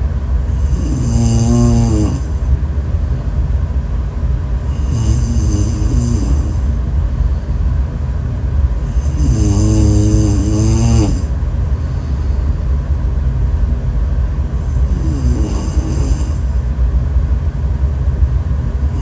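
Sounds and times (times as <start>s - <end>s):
steady low rumble: 0.0s - 19.0s
person snoring loudly: 0.5s - 2.4s, 4.7s - 6.8s, 8.8s - 11.3s, 14.6s - 16.5s.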